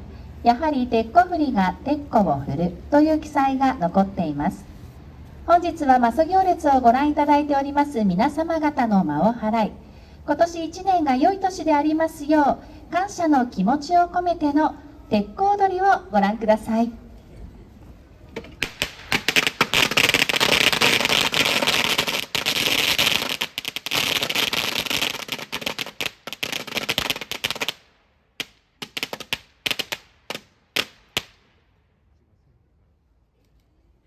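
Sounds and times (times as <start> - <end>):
firecrackers bangs: 18.4 - 31.6.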